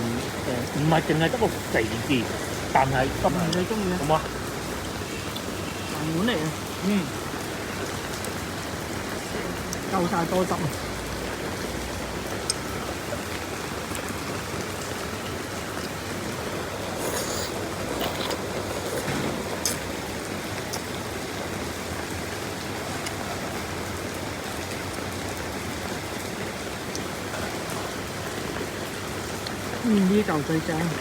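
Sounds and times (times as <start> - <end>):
heavy rain: 0.0 - 31.0.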